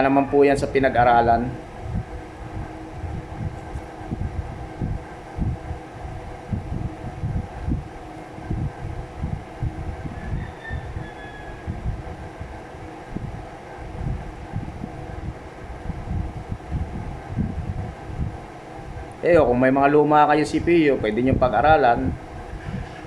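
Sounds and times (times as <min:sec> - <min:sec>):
faint hum: 0:00.0 - 0:23.0
wind buffeting microphone: 0:00.0 - 0:23.0.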